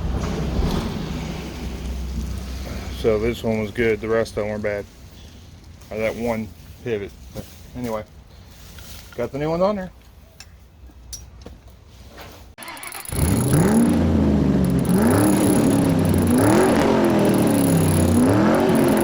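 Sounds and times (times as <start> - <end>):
car engine revving: 0.0 - 4.1, 12.6 - 19.0.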